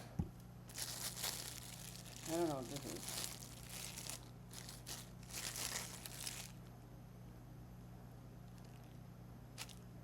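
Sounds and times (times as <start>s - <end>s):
faint steady low hum: 0.0s - 10.0s
packaging crinkling and rustling: 0.7s - 6.7s, 9.6s - 9.8s.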